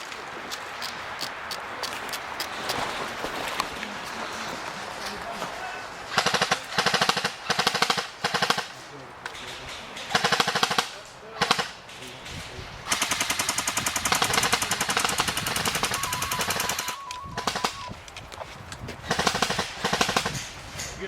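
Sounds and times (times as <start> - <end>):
airsoft guns firing full auto: 6.1 - 8.8, 9.4 - 11.8, 12.9 - 17.9, 19.1 - 20.5.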